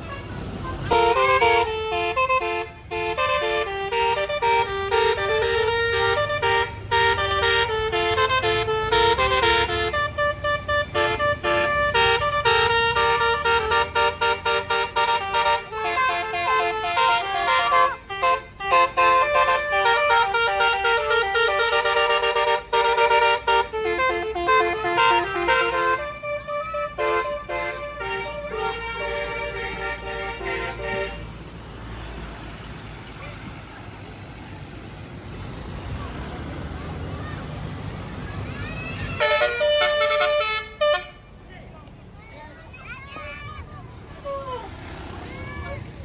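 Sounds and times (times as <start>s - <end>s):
low engine rumble: 0.0s - 46.0s
musical air horn tune: 0.1s - 31.4s.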